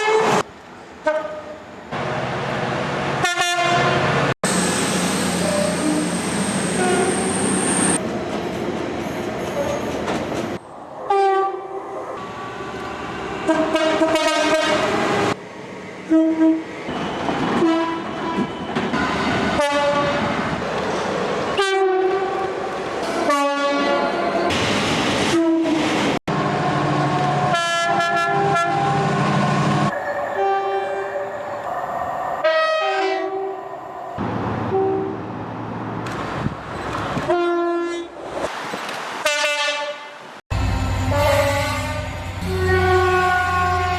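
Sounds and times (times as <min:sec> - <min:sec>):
trains rumbling on track: 0:00.0 - 0:43.9
two-tone train horns: 0:01.0 - 0:01.6, 0:03.2 - 0:04.2, 0:13.4 - 0:15.4, 0:16.0 - 0:16.7, 0:17.6 - 0:18.5, 0:19.5 - 0:20.4, 0:21.6 - 0:22.5, 0:23.2 - 0:24.4, 0:27.4 - 0:29.2, 0:32.4 - 0:33.6, 0:34.6 - 0:35.3, 0:37.3 - 0:38.1, 0:39.2 - 0:43.9.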